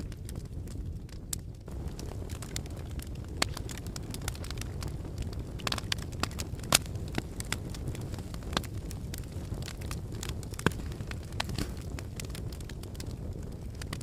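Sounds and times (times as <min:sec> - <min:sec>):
fire crackling and popping: 0:00.0 - 0:14.0
fire rumbling in fireplace: 0:00.0 - 0:14.0.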